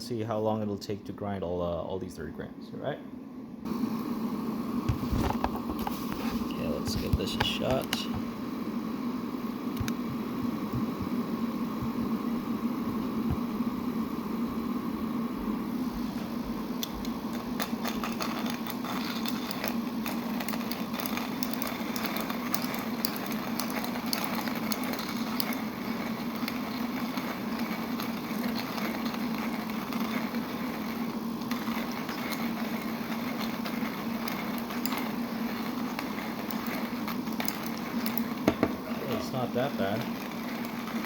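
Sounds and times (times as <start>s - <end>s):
manual coffee grinder grinding beans: 4.8s - 8.3s, 15.2s - 41.0s.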